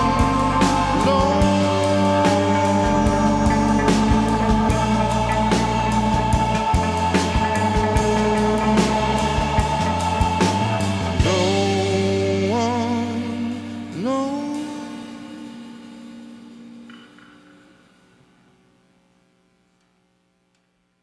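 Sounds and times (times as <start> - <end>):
drum hits: 0.0 - 11.9
rock band playing: 0.0 - 17.5.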